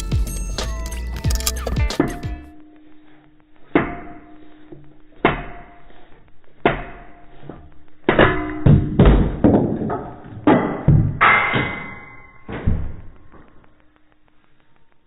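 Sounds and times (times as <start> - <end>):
metal parts being banged: 6.6 - 13.2.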